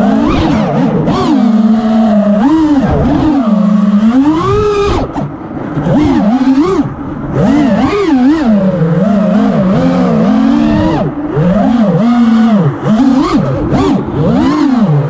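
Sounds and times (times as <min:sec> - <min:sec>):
drone motors and propellers whining: 0:00.0 - 0:15.0.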